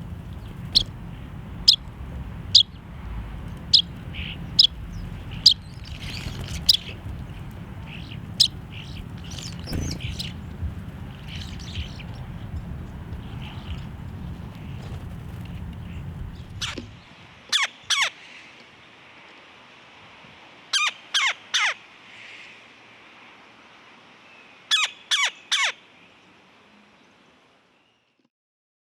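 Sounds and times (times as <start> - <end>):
low rumble: 0.0 - 17.0
bird harsh calls: 3.6 - 16.8, 20.8 - 22.6, 24.7 - 25.8.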